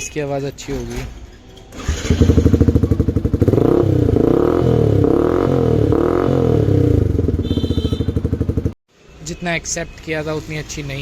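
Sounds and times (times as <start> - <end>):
motorcycle engine revving: 1.7 - 8.8.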